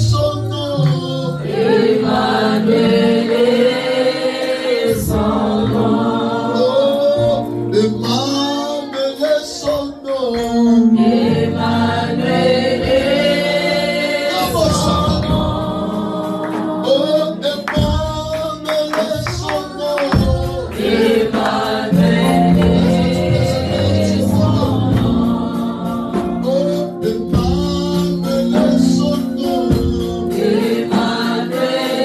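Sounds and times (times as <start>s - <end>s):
choir and congregation singing: 0.0s - 32.0s
percussion hits: 9.6s - 32.0s.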